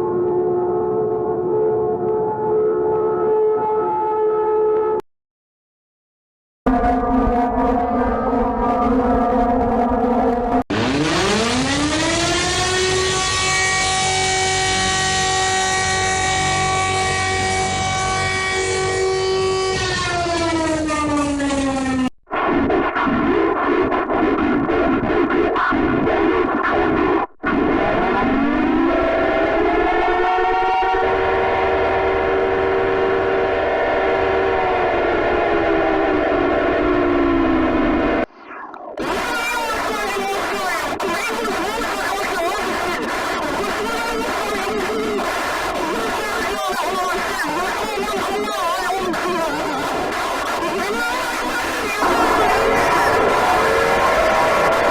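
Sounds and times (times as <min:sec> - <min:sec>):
siren winding up and wailing: 0:06.7 - 0:22.1, 0:43.5 - 0:54.9
steady alarm tone: 0:10.7 - 0:22.1.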